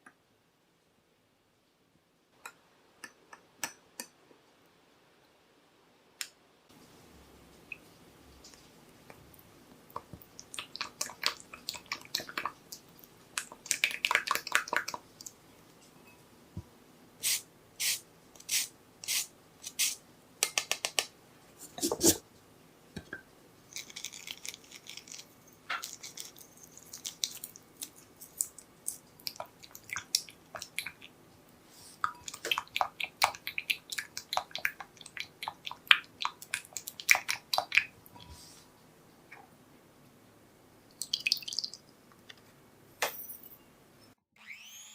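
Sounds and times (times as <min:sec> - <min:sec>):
soft squishes of food: 0:07.5 - 0:15.5, 0:23.6 - 0:38.8.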